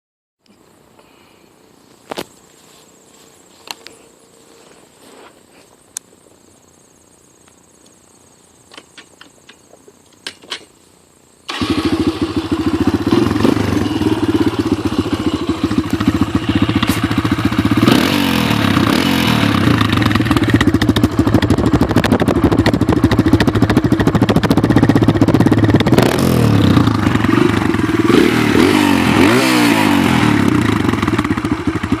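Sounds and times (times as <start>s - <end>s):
dirt bike engine running: 11.5s - 32.0s.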